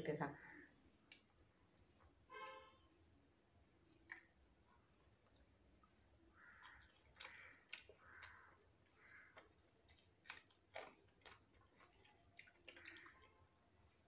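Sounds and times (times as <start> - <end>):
faint chewing: 3.7 - 14.0.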